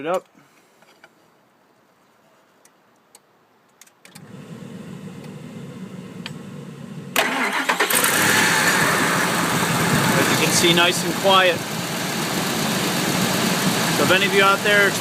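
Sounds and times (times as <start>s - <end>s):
engine starting and running: 4.1s - 15.0s
low hum: 4.2s - 14.0s.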